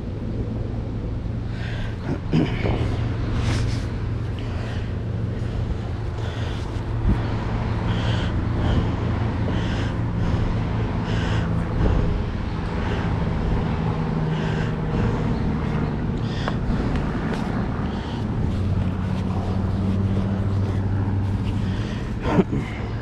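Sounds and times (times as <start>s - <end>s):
low motor hum: 0.0s - 23.0s.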